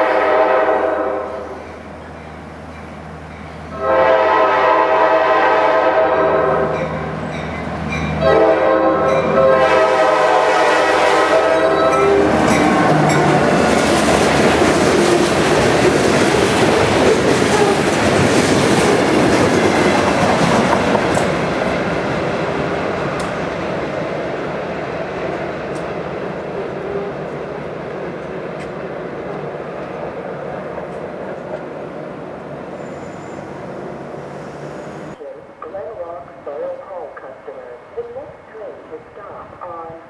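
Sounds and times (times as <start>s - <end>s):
locomotive horn blasts: 0.0s - 1.6s, 3.7s - 6.9s, 8.2s - 13.6s
train wheels clattering on rails: 11.8s - 23.6s.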